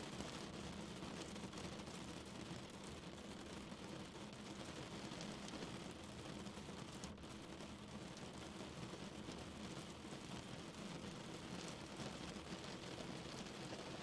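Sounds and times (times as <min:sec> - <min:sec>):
heavy rain on a car: 0:00.1 - 0:14.0.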